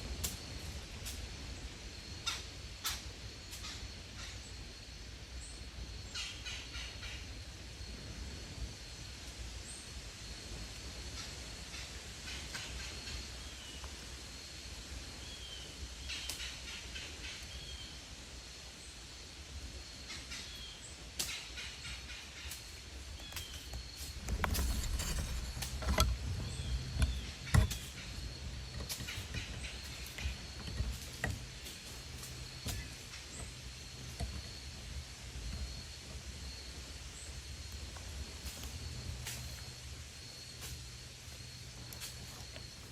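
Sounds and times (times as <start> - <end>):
rustling and knocks: 23.2 - 34.9.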